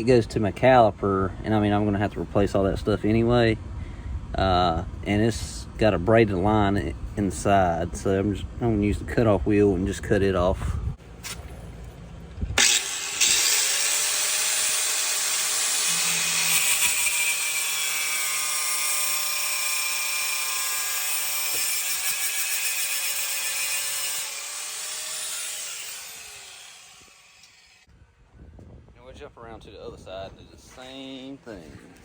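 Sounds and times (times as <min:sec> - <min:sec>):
angle grinder motor whine: 0:12.6 - 0:22.1, 0:22.7 - 0:27.9
grinder cutting rubber hose: 0:12.6 - 0:27.9.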